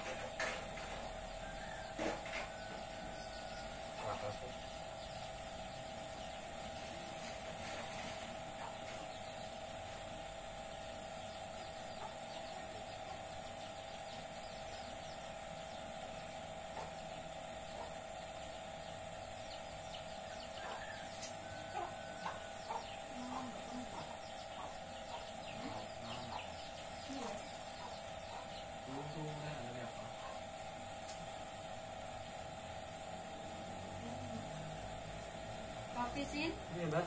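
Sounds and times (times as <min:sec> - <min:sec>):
steady hum: 0:00.0 - 0:37.0
chicken clucking: 0:20.6 - 0:28.6.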